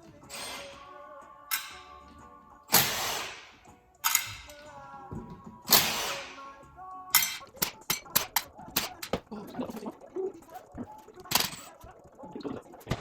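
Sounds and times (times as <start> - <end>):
faint background music: 0.0 - 13.0
sharp tool taps: 7.3 - 9.2.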